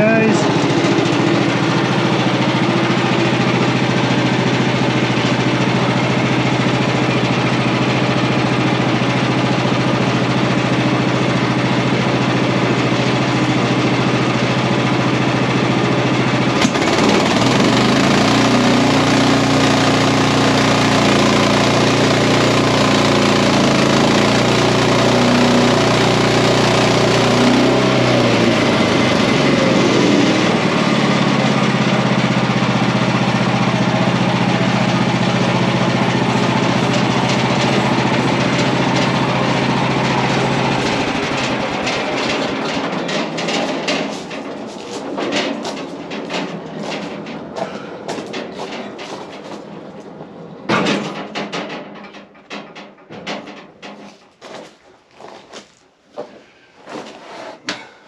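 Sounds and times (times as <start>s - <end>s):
gas engine running under load: 0.0s - 53.2s.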